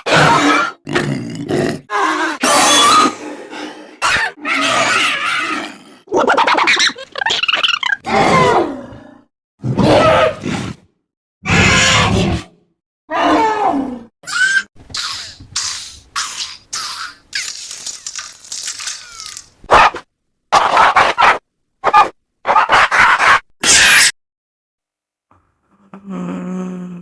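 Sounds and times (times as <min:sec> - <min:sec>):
creature vocal noises: 0:00.0 - 0:09.2, 0:13.1 - 0:19.6.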